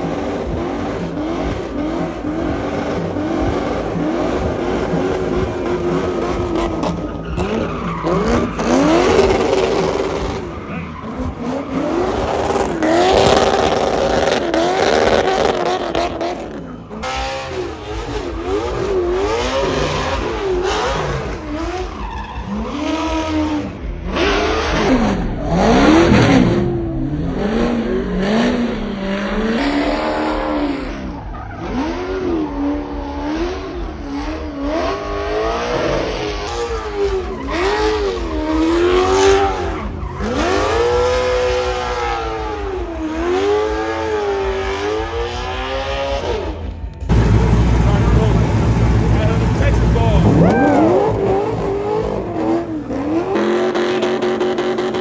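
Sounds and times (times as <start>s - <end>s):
car engine revving hard: 0.0s - 55.0s
tyres squealing: 47.1s - 53.4s.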